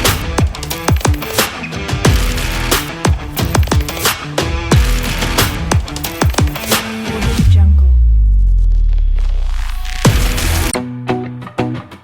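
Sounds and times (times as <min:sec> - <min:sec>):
electronic drums: 0:00.0 - 0:07.6, 0:09.4 - 0:10.8.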